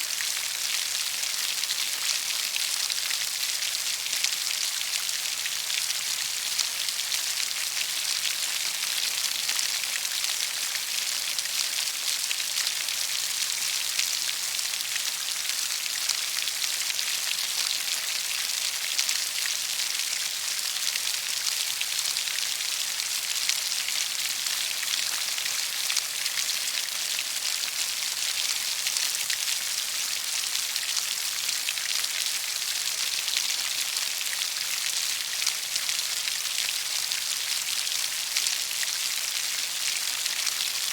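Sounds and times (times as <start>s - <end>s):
rain pattering on a surface: 0.0s - 40.9s.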